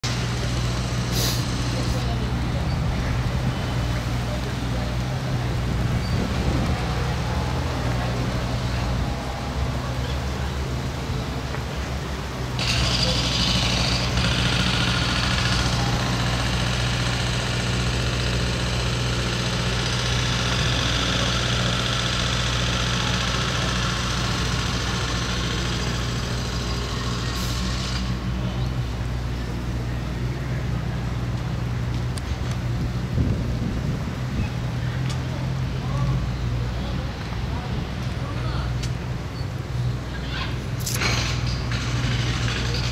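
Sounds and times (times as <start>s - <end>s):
engine humming: 0.0s - 42.9s
hiss: 1.1s - 1.8s.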